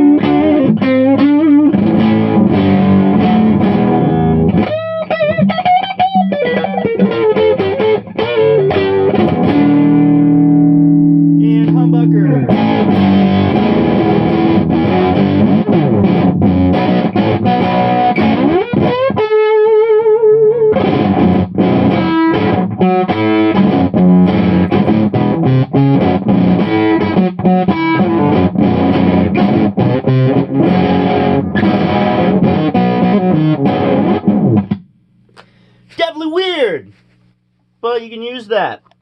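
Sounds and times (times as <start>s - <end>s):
distorted electric guitar: 0.0s - 35.8s.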